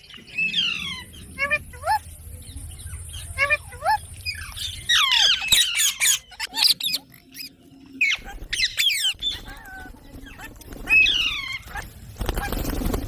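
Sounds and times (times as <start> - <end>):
parakeets squawking: 2.7 - 11.9.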